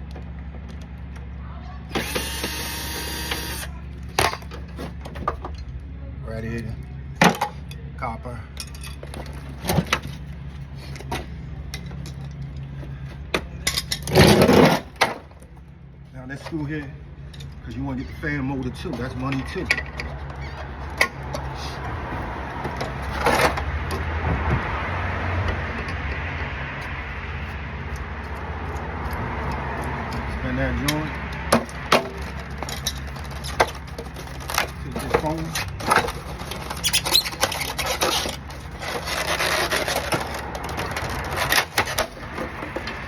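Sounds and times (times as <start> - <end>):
metal and plastic scraping and clicking: 2.0 - 5.7, 8.6 - 15.6, 22.6 - 24.1, 27.9 - 43.0
tool scraping rasp: 33.2 - 42.8.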